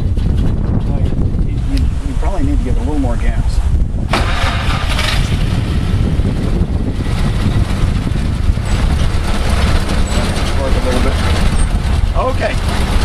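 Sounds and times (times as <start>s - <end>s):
truck engine running: 3.9s - 13.0s.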